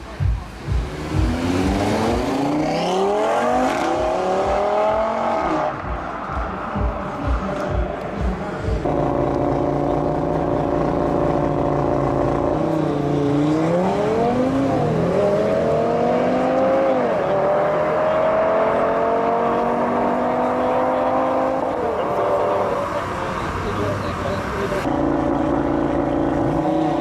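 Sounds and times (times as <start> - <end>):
car engine accelerating through gears: 0.7 - 6.8, 8.8 - 27.0.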